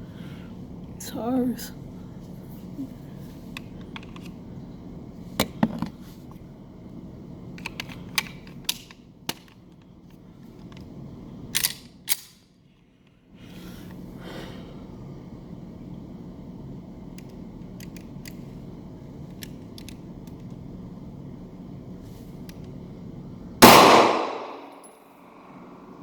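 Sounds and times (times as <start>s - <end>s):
gun handling clicks: 3.6s - 4.4s, 7.5s - 10.9s, 11.5s - 12.5s, 17.1s - 18.6s, 19.2s - 20.6s, 23.6s - 25.0s
pistol shots: 23.6s - 24.9s.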